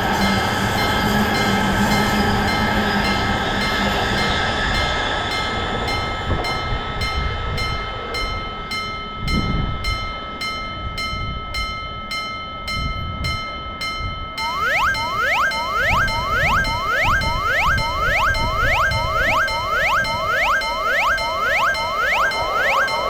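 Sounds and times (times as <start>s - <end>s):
railroad crossing alarm clanging: 0.0s - 23.0s
rising whistle-like sound effect: 14.4s - 23.0s.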